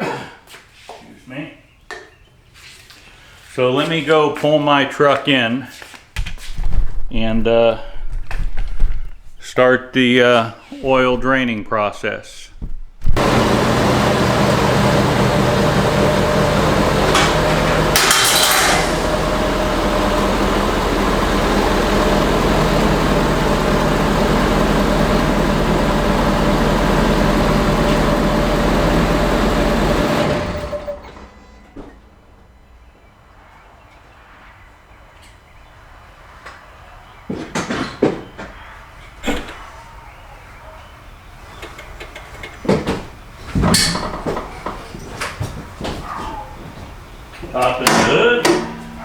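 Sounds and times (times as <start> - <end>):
truck diesel engine running: 13.2 - 32.5, 46.9 - 49.0
sharp knocks: 16.5 - 20.6, 47.8 - 49.0.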